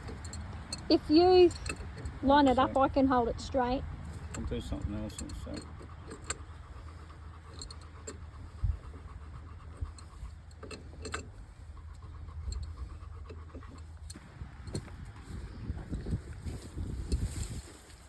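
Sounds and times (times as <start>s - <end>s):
light clicks and knocks of work: 0.0s - 2.9s, 4.1s - 15.3s
low steady rumble: 0.0s - 18.0s.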